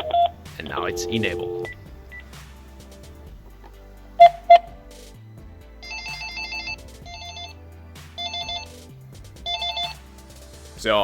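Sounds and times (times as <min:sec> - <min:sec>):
short loud beeps: 0:00.0 - 0:02.2
telephone electronic ringer trilling: 0:05.8 - 0:07.6, 0:09.5 - 0:10.0.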